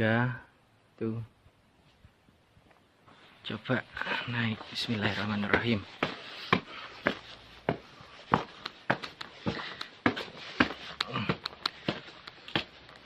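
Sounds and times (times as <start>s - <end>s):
footsteps climbing stairs: 4.9s - 12.9s.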